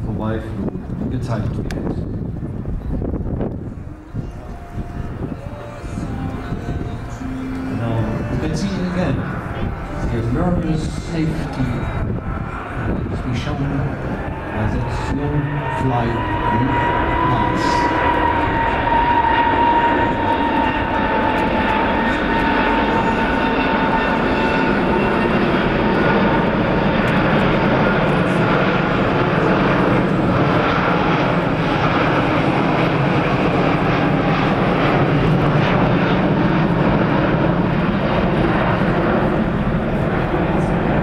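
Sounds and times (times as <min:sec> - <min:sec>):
jet engine rumble: 0:00.0 - 0:41.0
jet engine whine: 0:00.0 - 0:41.0.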